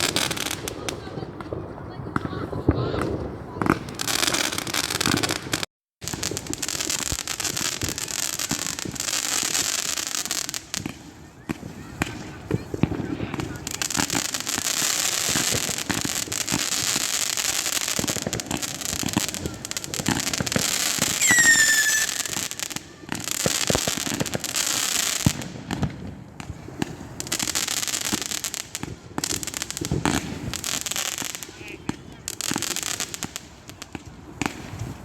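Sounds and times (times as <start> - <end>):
fireworks crackling and popping: 0.0 - 35.0
firework falling whistle: 21.0 - 23.8.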